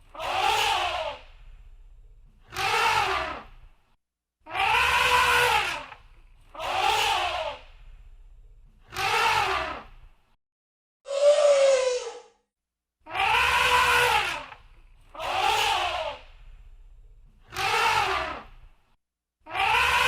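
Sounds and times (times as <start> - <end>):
elephant trumpeting: 4.6 - 5.9, 13.2 - 14.5.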